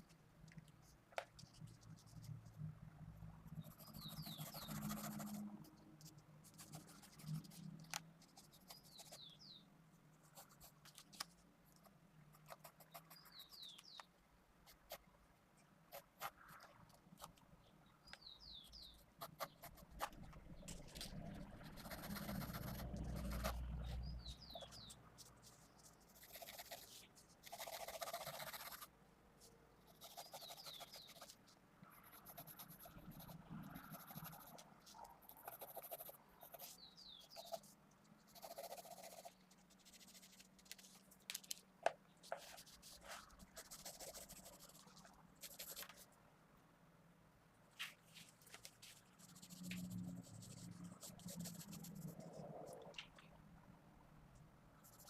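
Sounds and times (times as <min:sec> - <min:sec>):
pencil scratching on paper: 0:03.6 - 0:09.3, 0:21.6 - 0:23.6, 0:24.4 - 0:28.9, 0:29.9 - 0:31.4, 0:32.0 - 0:37.7, 0:38.3 - 0:40.9, 0:42.3 - 0:44.8, 0:45.4 - 0:46.0, 0:48.8 - 0:52.3.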